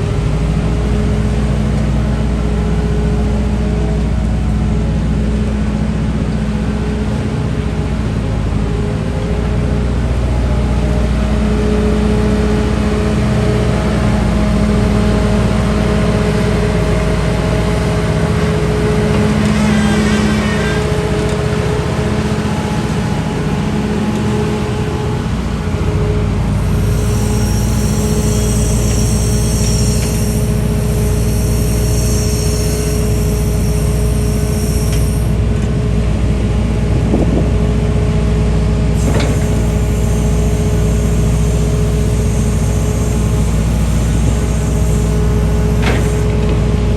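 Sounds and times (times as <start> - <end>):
diesel engine running: 0.0 - 46.9
whining tones: 10.6 - 35.7, 38.9 - 46.9
high-pitched squealing: 12.1 - 35.4, 39.0 - 46.9.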